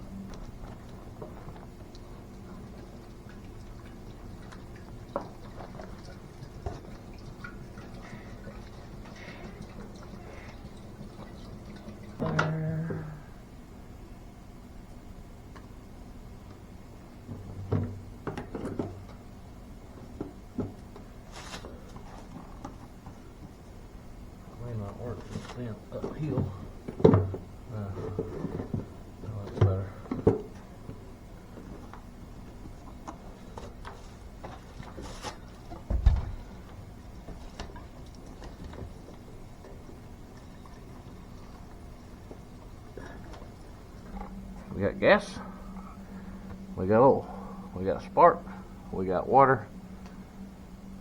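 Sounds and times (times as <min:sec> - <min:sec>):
scraping rustle: 0:21.2 - 0:22.6, 0:34.0 - 0:35.6.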